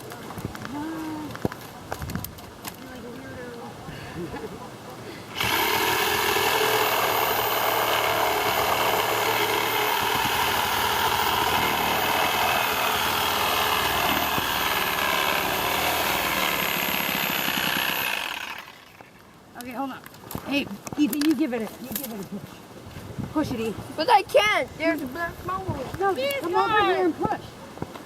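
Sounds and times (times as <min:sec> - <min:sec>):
power saw cutting tree trunk: 0:05.3 - 0:19.2.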